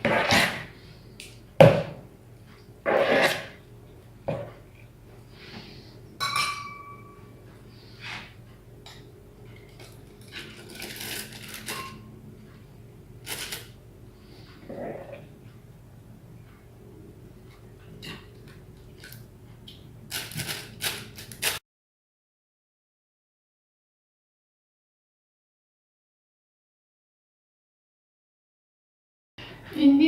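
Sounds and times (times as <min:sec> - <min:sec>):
dishes and utensils clattering: 0:06.2 - 0:07.2.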